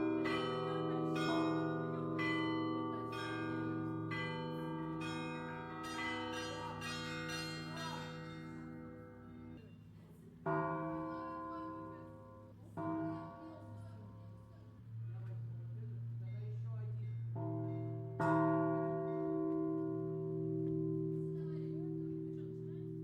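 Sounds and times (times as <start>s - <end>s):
hum of large bells: 0.0s - 9.6s
small church bells striking: 0.0s - 9.6s, 17.3s - 23.0s.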